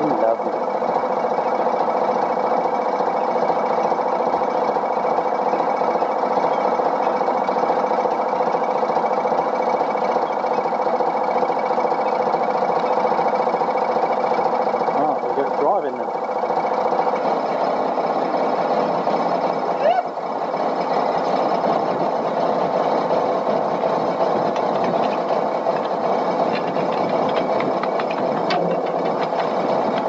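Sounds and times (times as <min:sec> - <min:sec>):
diesel engine running steadily: 0:00.0 - 0:30.0.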